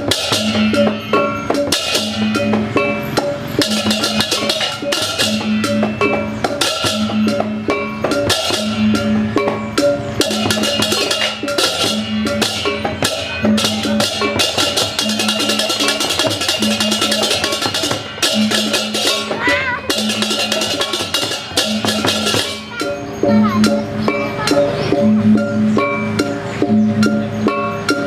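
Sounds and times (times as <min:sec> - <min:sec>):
drum strokes: 0:00.0 - 0:28.0
rapid clashing cymbals: 0:00.0 - 0:28.0
repeating pitched metallic tone: 0:00.0 - 0:28.0.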